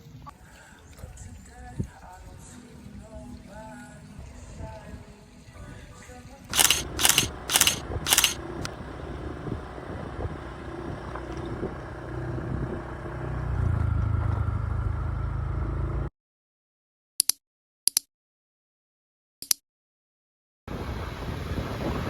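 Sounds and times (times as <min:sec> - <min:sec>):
engine rumbling: 0:06.5 - 0:16.1.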